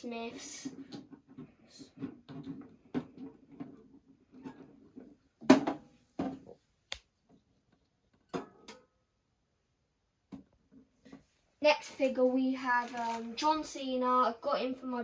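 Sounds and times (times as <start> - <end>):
plastic toys clacking: 12.0 - 13.4.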